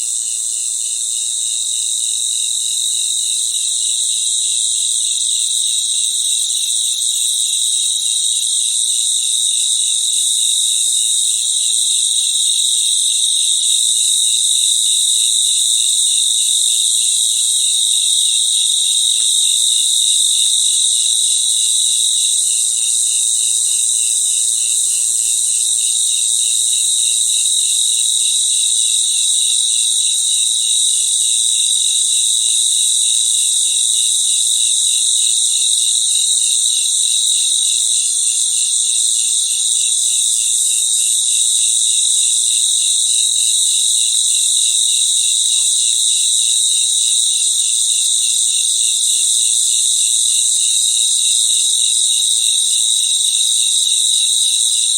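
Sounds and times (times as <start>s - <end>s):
crickets chirping: 0.0s - 54.9s.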